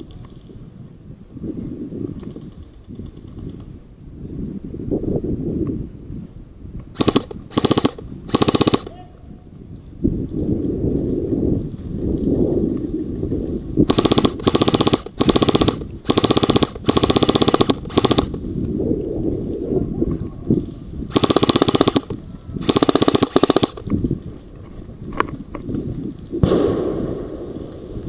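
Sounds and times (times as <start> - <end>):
airsoft gun bursts: 6.9 - 9.0, 13.9 - 18.4, 21.1 - 23.9
low rumble: 23.7 - 28.0.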